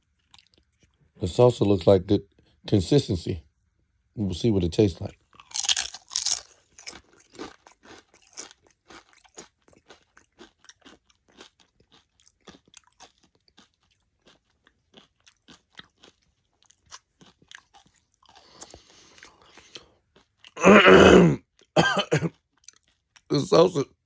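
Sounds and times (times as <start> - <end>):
crunching chips: 5.2 - 20.6.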